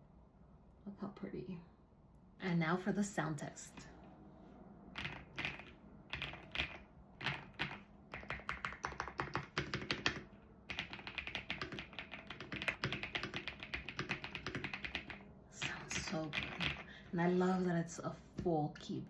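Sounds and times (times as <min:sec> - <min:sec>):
typing on mechanical keyboard: 0:05.0 - 0:16.9.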